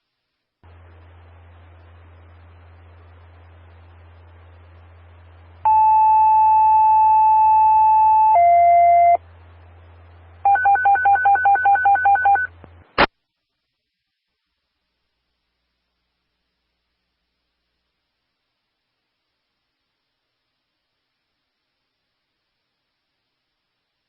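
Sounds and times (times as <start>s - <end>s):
radio hiss and hum: 0.0s - 13.2s
two-tone radio page: 5.7s - 9.2s.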